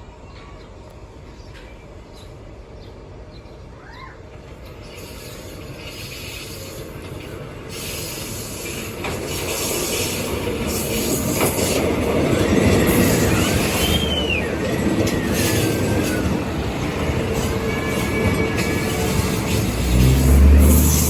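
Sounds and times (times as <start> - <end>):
train rumbling on rails: 0.0 - 21.0
high wheel squeals: 12.4 - 21.0.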